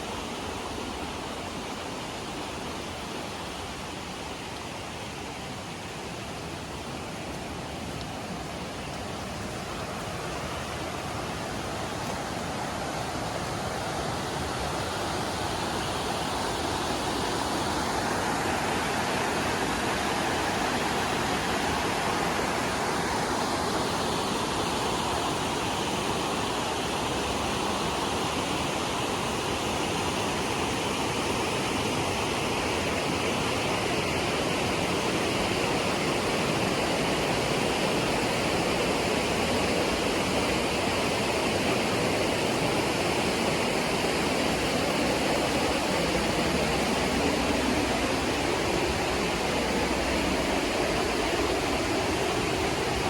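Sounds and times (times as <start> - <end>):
waterfall and stream rushing: 0.0 - 53.0.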